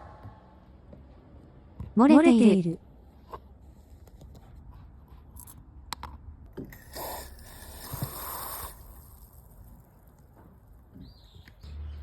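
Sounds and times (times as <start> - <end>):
scraping hiss: 6.8 - 9.7.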